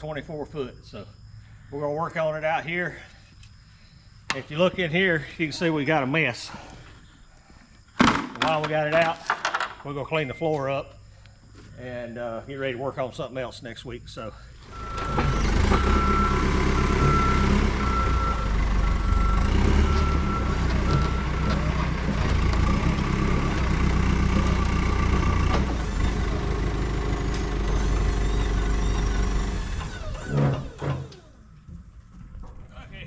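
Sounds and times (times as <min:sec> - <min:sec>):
reversing alarm beeping: 0:10.0 - 0:11.0, 0:14.3 - 0:25.1, 0:26.8 - 0:32.2
heavy diesel engine running: 0:14.6 - 0:31.3.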